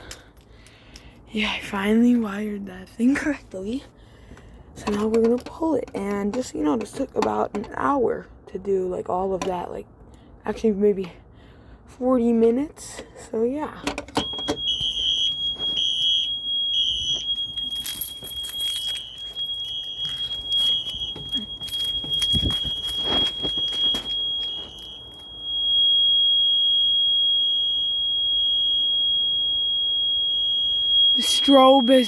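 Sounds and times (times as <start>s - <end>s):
fire alarm steady high tone: 13.9s - 32.0s
pulsing alarm tone: 14.2s - 32.0s
knocks and rustles: 17.0s - 24.8s.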